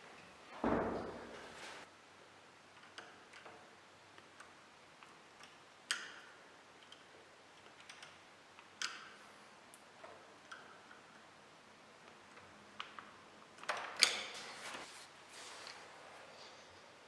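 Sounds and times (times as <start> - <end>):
sharp knocks: 0.6 - 1.5.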